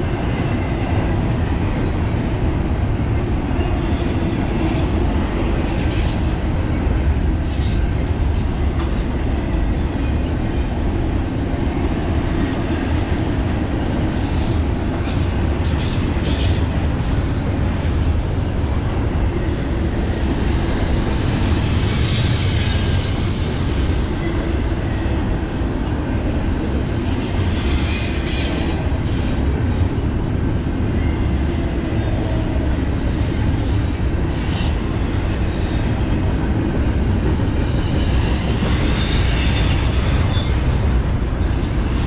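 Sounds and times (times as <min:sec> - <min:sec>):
train wheels rumbling on rails: 0:00.0 - 0:42.0
wheel squeals: 0:37.9 - 0:40.8.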